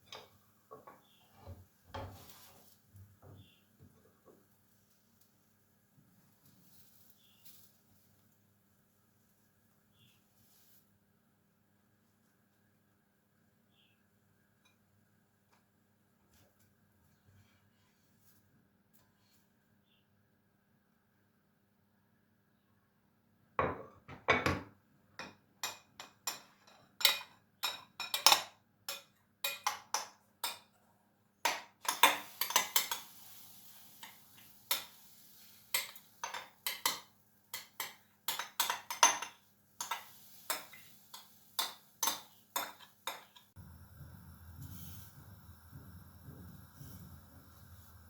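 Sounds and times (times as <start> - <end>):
utensil clinking against a dish: 25.2 - 30.8, 31.5 - 33.2, 35.7 - 43.5
steady low hum: 43.6 - 48.0.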